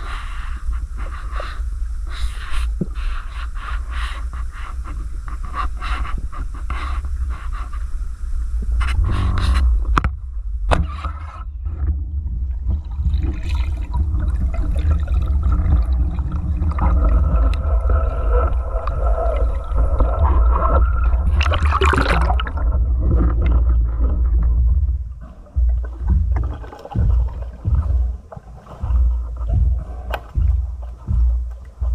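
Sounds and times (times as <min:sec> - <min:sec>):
low rumble: 0:00.0 - 0:31.9
water sloshing and gurgling: 0:00.0 - 0:31.9
rush of water: 0:11.8 - 0:31.9.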